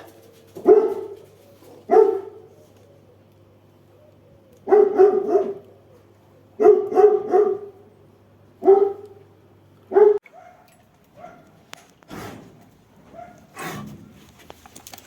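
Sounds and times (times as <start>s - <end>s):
hound barking: 0.6s - 2.6s, 4.6s - 5.8s, 6.6s - 7.9s, 8.6s - 9.2s, 9.9s - 11.6s, 13.1s - 13.8s.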